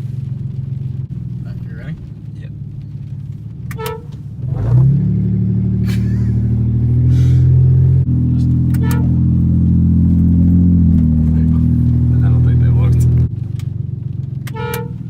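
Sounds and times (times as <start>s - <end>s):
air horns chord: 8.7s - 9.3s, 14.5s - 15.0s.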